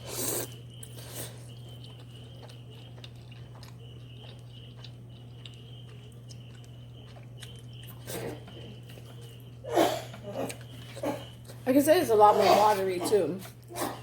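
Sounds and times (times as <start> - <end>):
chewing noodles: 0.0 - 11.6
steady low hum: 0.0 - 14.0.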